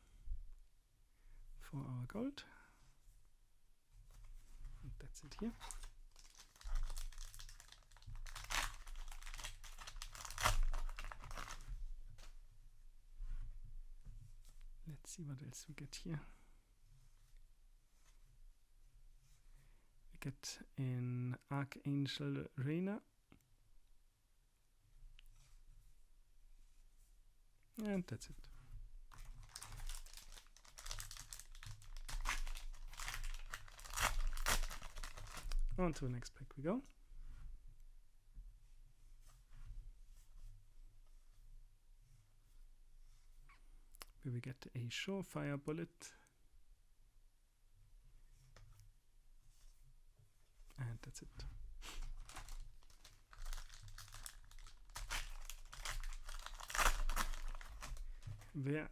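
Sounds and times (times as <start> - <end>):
foil wrapper tearing and crinkling: 5.6 - 11.6, 29.1 - 35.6, 51.8 - 58.3.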